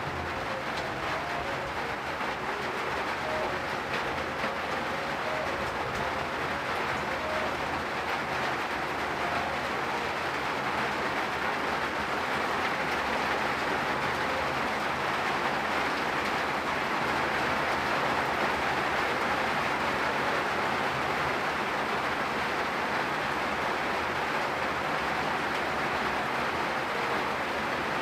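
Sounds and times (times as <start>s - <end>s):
rain falling: 0.0s - 28.0s.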